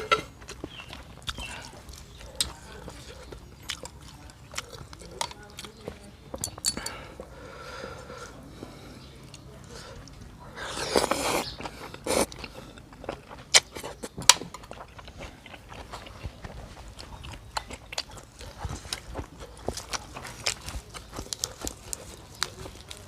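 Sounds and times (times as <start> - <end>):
chewing and crunching: 0.0 - 23.0
loud slurping of soup: 10.6 - 12.3.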